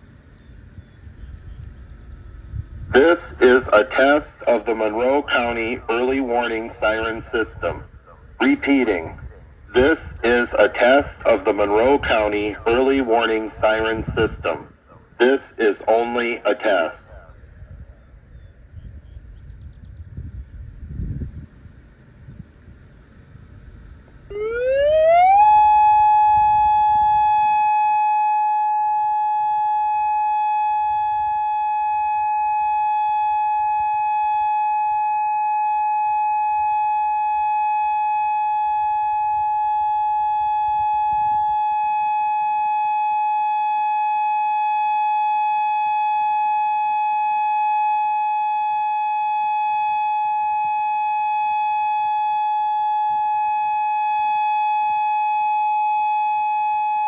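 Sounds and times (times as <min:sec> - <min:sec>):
outdoor warning siren steady tone: 0:00.0 - 0:57.0.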